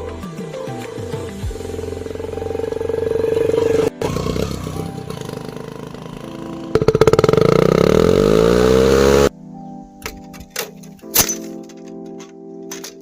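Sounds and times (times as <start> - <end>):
toy buzzing putter: 6.7 - 9.0.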